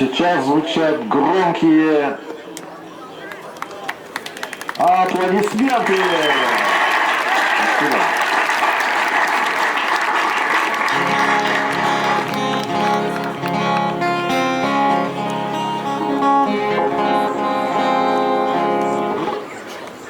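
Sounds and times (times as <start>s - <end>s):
crowd applauding: 3.2s - 16.3s
instrumental tune: 10.9s - 19.4s.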